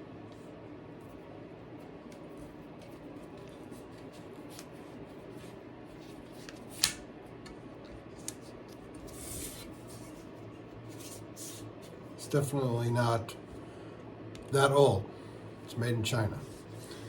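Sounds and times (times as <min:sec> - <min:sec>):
rubbing and rustling: 0:08.0 - 0:12.0.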